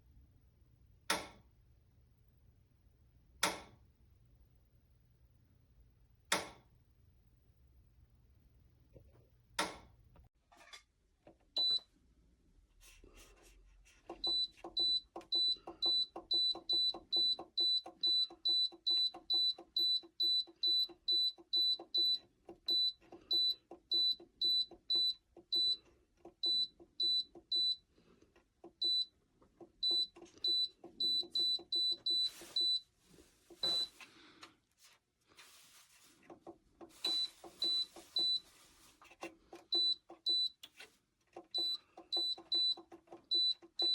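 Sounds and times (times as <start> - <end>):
rustling: 32.1 - 39.5.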